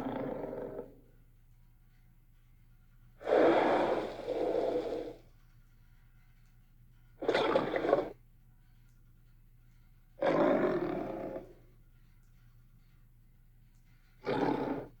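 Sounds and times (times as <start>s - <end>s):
breathy hissing creature calls: 3.2s - 5.2s.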